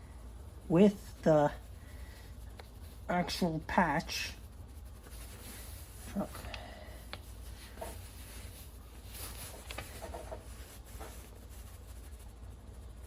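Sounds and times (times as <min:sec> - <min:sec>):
rubbing and small clicks: 0:02.3 - 0:03.5, 0:04.4 - 0:12.3.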